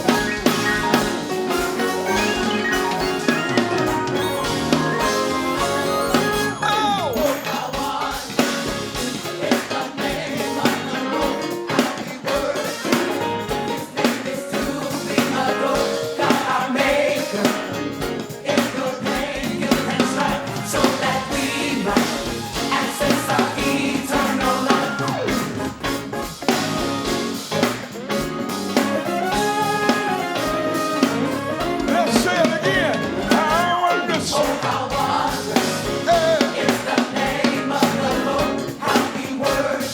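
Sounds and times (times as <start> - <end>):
singing: 0.0 - 25.6, 28.8 - 39.9
drum kit beat: 0.0 - 39.9
live gospel band music: 0.0 - 39.9.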